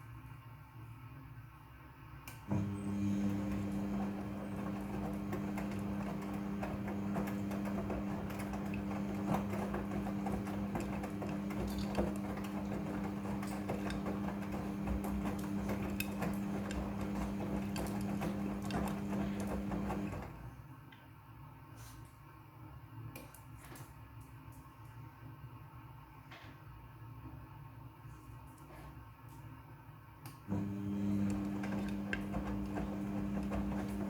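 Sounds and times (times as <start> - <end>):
clicks and knocks of tumbling load: 2.5 - 20.5, 30.5 - 34.0
washing machine motor hum: 2.5 - 20.7, 30.5 - 34.0.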